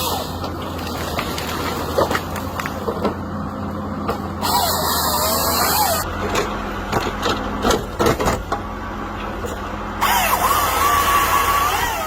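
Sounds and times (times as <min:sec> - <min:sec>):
harvester engine running: 0:00.0 - 0:12.0
knocks and clatter: 0:06.2 - 0:09.7.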